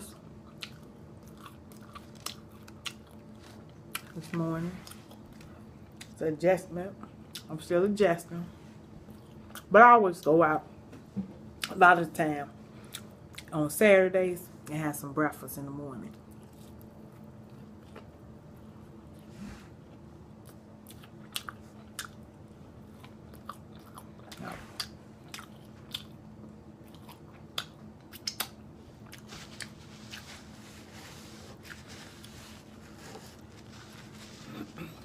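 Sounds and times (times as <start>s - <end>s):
steady low hum: 0.0s - 35.0s
woman chewing crunchy food: 0.1s - 4.2s, 16.3s - 19.3s, 20.3s - 30.3s
wet mouth clicks: 27.6s - 28.6s.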